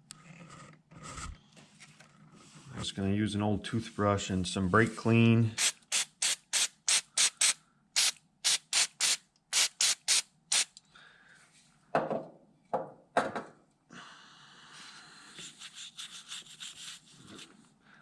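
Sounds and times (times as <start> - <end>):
aerosol spray spritzes: 5.6 - 10.8
toothbrush scrubbing metal: 15.4 - 17.5.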